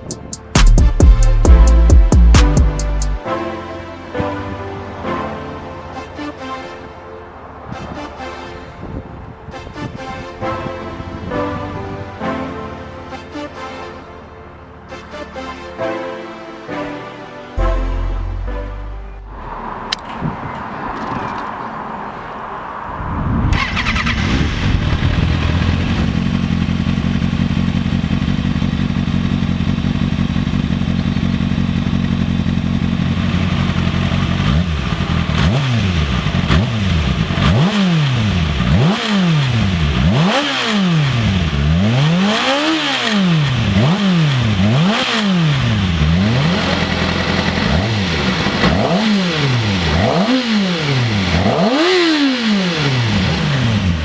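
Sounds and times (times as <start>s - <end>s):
motorcycle engine revving: 22.9s - 54.0s.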